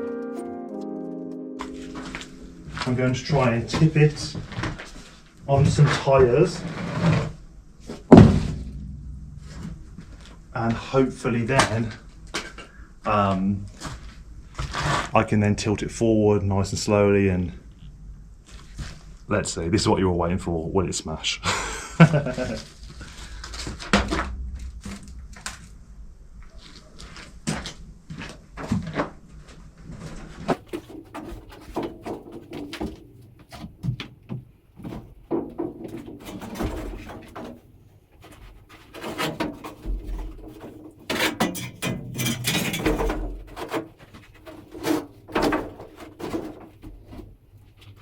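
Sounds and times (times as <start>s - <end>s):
wooden barrel knocks and creaks: 5.5s - 10.8s, 23.5s - 25.7s, 30.4s - 47.4s
wooden barrel knocks: 8.1s - 10.3s.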